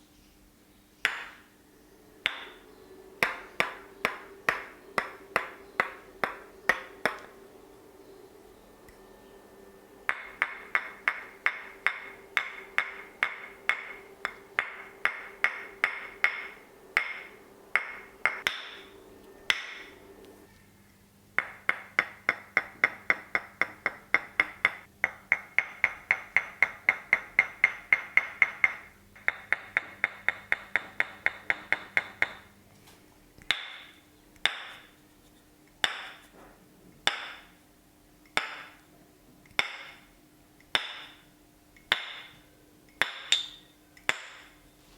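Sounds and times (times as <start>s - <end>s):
percussive hand strikes: 2.2s - 2.6s, 3.2s - 7.3s, 10.1s - 18.8s.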